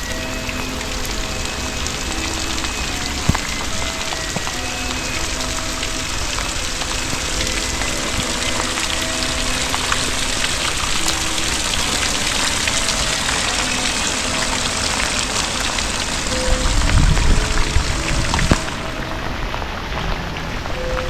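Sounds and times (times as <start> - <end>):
raindrops ticking: 0.0 - 21.0
steady rain falling: 0.0 - 21.0.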